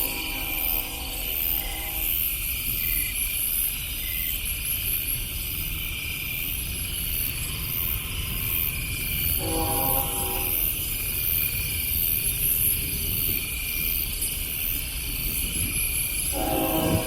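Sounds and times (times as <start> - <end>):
distant train horn: 0.0 - 2.3, 9.4 - 10.9, 16.3 - 17.0
insects chirping: 0.0 - 17.0.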